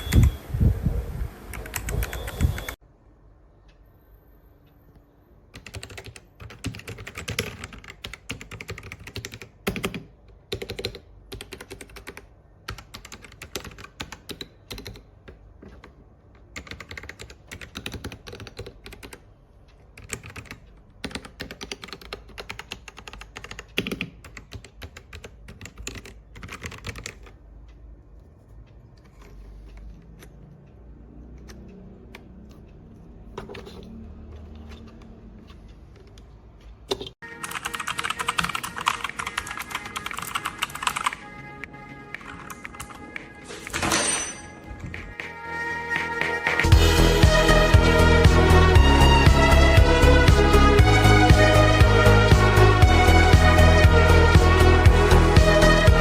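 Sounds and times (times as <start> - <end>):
mechanical keyboard typing: 1.5 - 2.8, 5.5 - 27.6, 28.8 - 30.5, 31.2 - 43.4.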